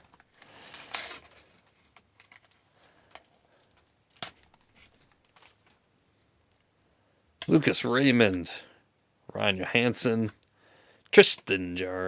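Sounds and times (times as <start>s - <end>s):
wrapper tearing open: 0.0s - 2.8s.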